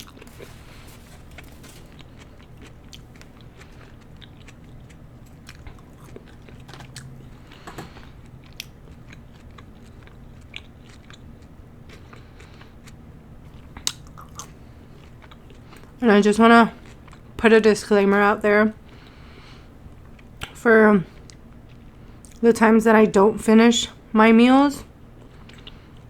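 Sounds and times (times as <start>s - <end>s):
person chewing food: 0.0s - 16.0s, 16.8s - 17.4s, 21.2s - 22.4s, 25.2s - 26.0s.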